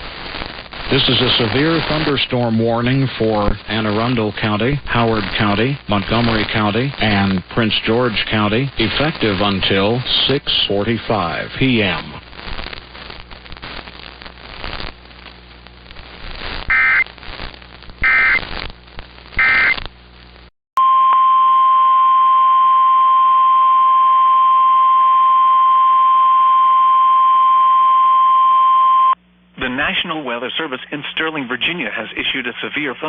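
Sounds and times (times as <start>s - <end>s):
crackling radio static: 0.0s - 20.5s, 25.9s - 33.0s
digital data tone bursts: 16.7s - 17.0s, 18.0s - 18.4s, 19.4s - 19.8s
weather radio alarm tone: 16.7s - 17.0s, 18.0s - 18.4s, 19.4s - 19.8s, 20.8s - 29.2s.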